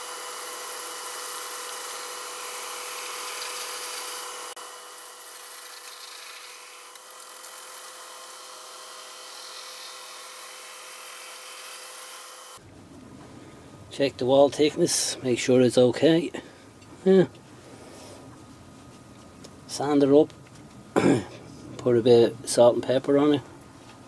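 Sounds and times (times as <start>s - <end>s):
gouge cutting hiss: 0.0s - 12.6s
lathe motor tone: 0.0s - 12.6s.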